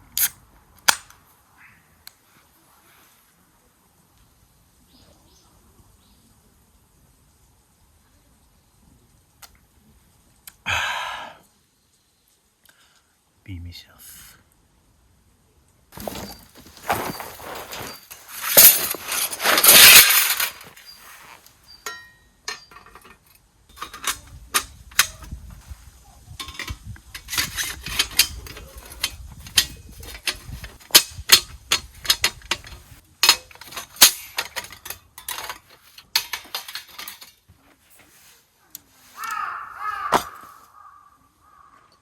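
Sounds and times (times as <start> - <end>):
clinks and knocks of gear: 16.0 - 25.4, 26.4 - 38.0
camp gear rustling: 16.0 - 40.8.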